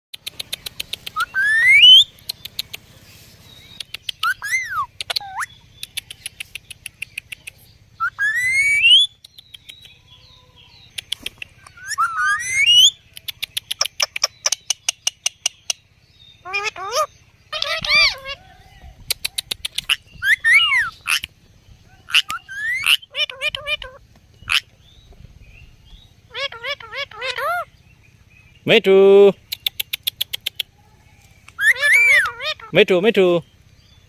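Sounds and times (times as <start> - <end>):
quick sharp clicks: 0.2 - 1.3, 2.1 - 2.9, 3.7 - 5.2, 5.8 - 7.7, 10.9 - 11.7, 19.1 - 20.0, 29.4 - 30.7
parrot screeching: 1.2 - 2.0, 4.2 - 5.5, 8.0 - 9.1, 11.7 - 12.9, 16.4 - 18.6, 19.9 - 21.2, 22.1 - 24.6, 26.3 - 27.7, 31.6 - 32.8.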